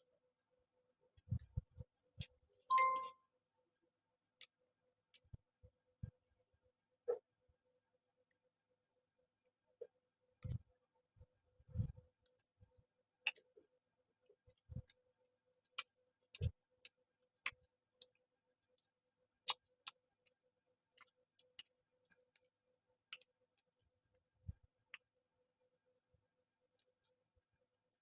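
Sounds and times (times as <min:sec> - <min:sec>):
sharp eating clicks and smacks: 0:11.8 - 0:25.3.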